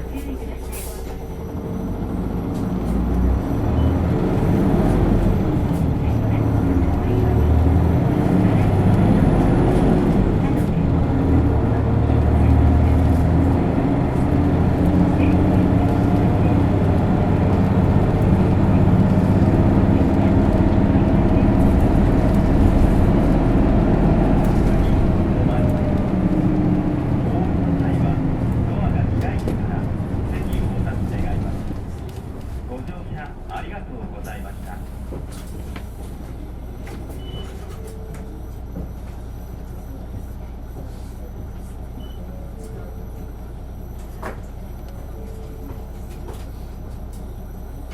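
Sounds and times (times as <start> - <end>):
bus diesel engine droning: 0.0 - 47.9
road noise: 0.0 - 47.9
high beep: 37.2 - 38.2, 42.0 - 42.4.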